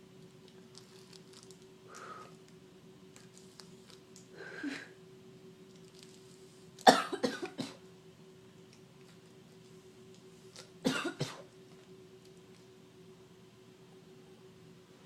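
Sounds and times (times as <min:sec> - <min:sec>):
person coughing: 0:06.8 - 0:07.8, 0:10.8 - 0:11.5.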